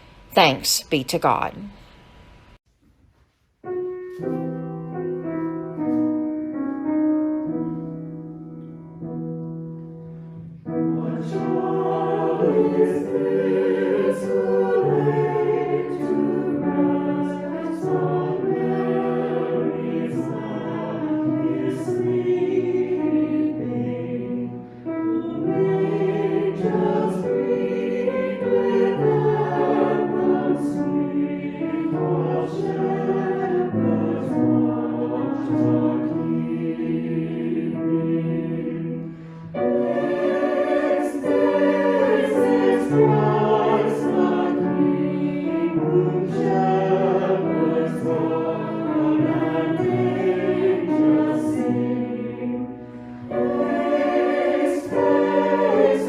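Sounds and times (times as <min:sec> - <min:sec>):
choir singing a hymn: 0:04.3 - 0:56.0.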